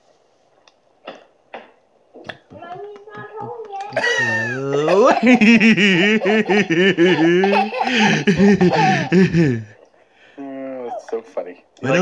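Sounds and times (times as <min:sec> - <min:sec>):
person laughing hysterically: 0:04.0 - 0:09.8.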